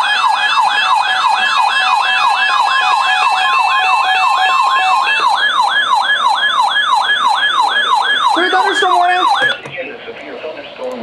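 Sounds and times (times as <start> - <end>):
electronic siren yelping: 0.0 - 9.7
interrupted beeping tones: 4.3 - 9.8.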